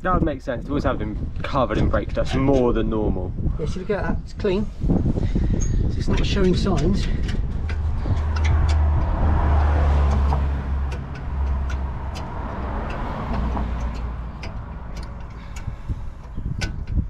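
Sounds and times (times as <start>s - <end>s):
vehicle engine and tyre noise: 4.6s - 17.0s.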